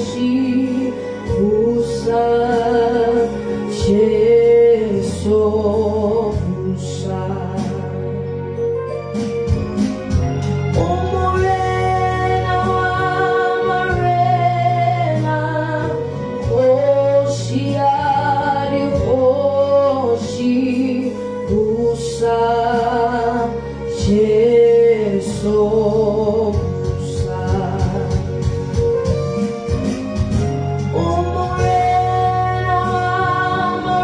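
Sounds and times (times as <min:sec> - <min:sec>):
bass line: 0:00.0 - 0:34.0
sustained keyboard chords: 0:00.0 - 0:34.0
person singing gospel melody: 0:10.6 - 0:34.0.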